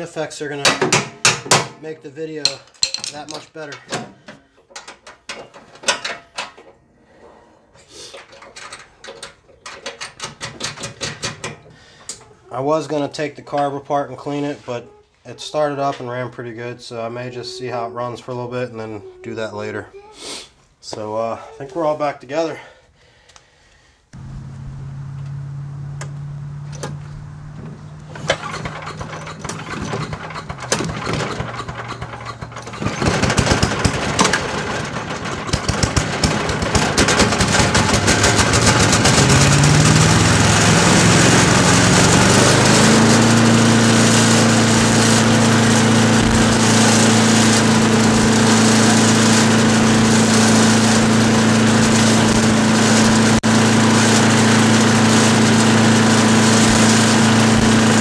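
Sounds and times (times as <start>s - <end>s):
wood chipper engine running: 24.2s - 58.0s
dense rattling clatter: 27.5s - 58.0s.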